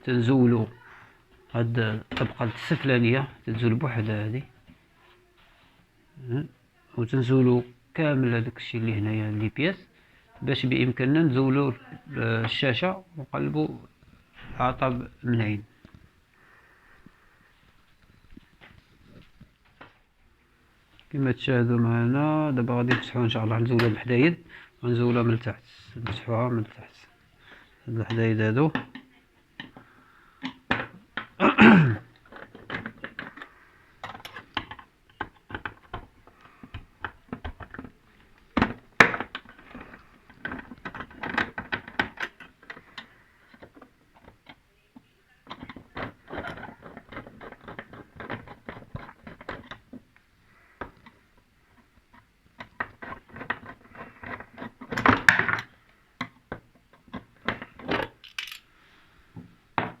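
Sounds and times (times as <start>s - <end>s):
metallic clicks of tool and screws: 57.1s - 58.7s.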